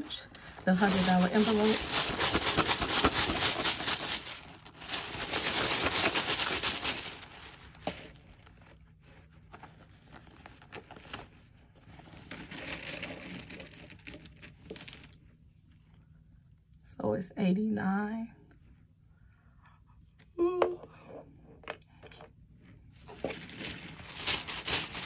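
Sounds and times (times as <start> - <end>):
paper slips shaken in bag: 0.5 - 8.2, 23.3 - 25.0
hand rustling in bag: 0.5 - 8.6, 23.1 - 25.0.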